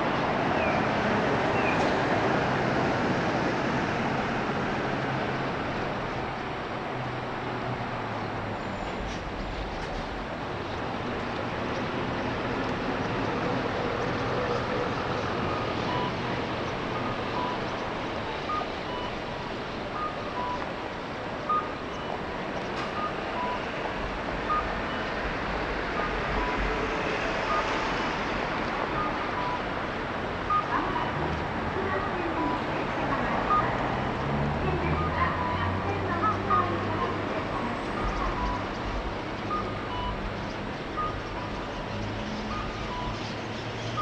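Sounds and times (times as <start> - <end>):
street traffic: 0.0 - 44.0
two-tone electronic beep: 15.5 - 16.2, 17.0 - 17.6, 18.5 - 19.2, 20.0 - 20.6, 21.5 - 22.2, 24.5 - 25.1, 33.5 - 33.7, 38.0 - 38.7, 39.5 - 40.2, 41.0 - 41.3, 42.5 - 43.2.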